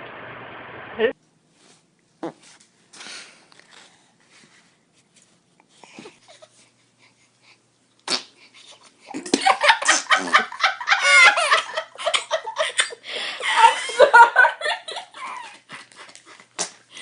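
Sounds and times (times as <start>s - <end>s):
bursts of laughter: 9.2s - 16.0s.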